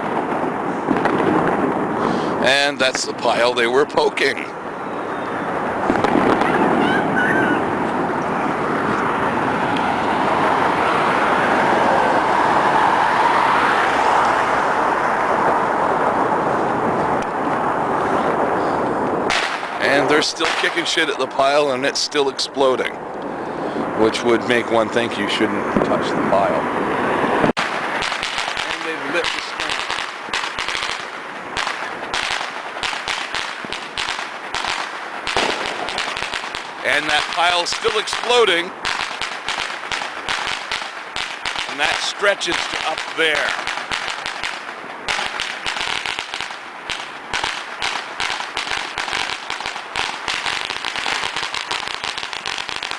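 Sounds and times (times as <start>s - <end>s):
firecrackers crackling: 0.0s - 52.9s
street traffic noise: 4.4s - 20.6s, 22.8s - 52.9s
vehicle passing by: 7.7s - 18.6s.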